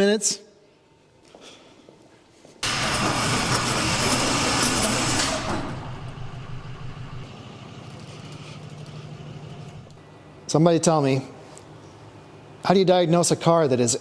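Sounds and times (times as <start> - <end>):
car engine running: 2.6 - 10.0.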